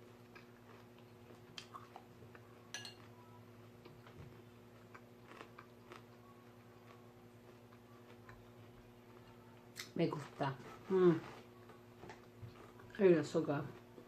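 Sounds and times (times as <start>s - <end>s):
chewing crunchy salad: 0.0s - 10.3s
low steady hum: 0.0s - 14.0s.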